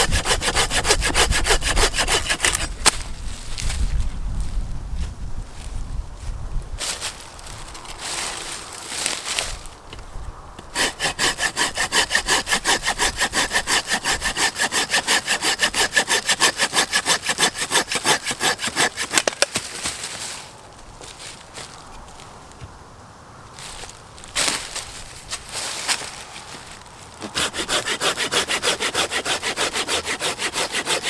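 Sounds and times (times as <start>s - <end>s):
hand saw cutting wood: 0.0s - 3.0s, 10.6s - 19.9s, 27.2s - 31.0s
handling rustle: 2.4s - 10.2s, 19.1s - 22.8s, 23.5s - 27.4s.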